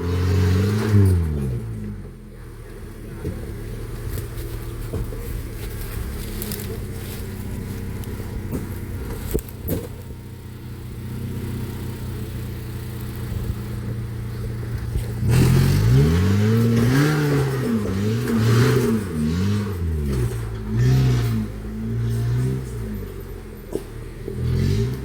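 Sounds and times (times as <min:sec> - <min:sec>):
car engine idling and revving: 0:00.0 - 0:25.0.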